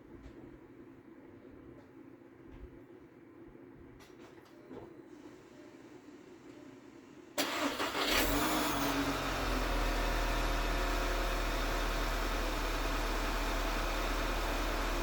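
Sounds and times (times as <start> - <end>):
car engine starting and idling: 7.4 - 15.0.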